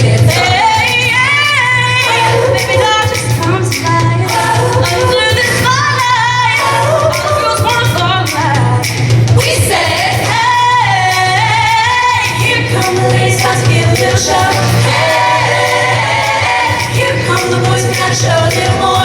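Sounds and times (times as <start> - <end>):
woman singing: 0.0 - 15.8, 16.7 - 19.0
sustained bass line: 0.0 - 19.0.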